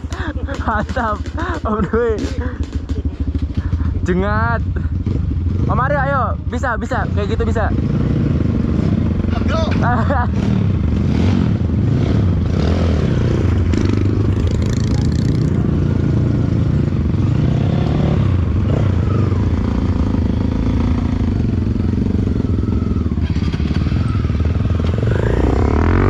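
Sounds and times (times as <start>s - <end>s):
motorcycle clattering over rough ground: 0.0s - 3.9s
motorcycle engine running: 0.0s - 26.0s.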